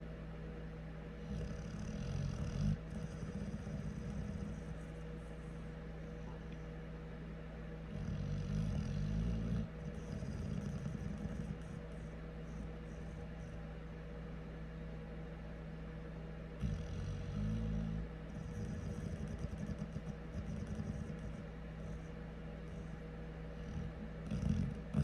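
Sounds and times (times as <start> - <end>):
dog snoring: 1.2 - 6.7, 7.9 - 13.7, 16.6 - 25.0.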